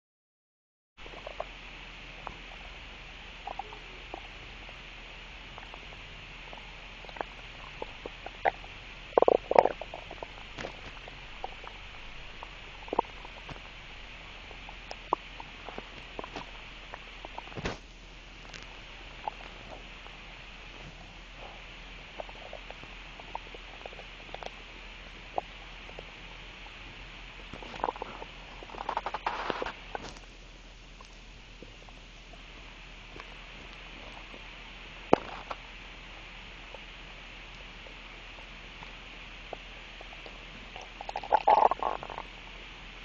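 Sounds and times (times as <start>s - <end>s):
stomach gurgling: 1.0s - 43.0s.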